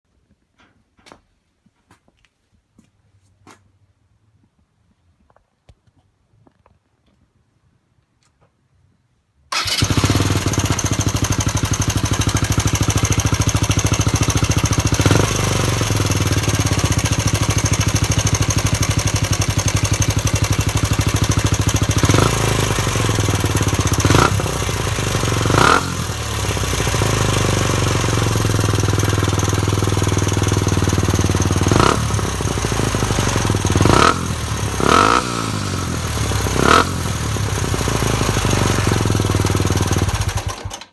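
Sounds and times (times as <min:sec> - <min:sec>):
motorcycle engine idling and revving: 0:09.5 - 0:40.9.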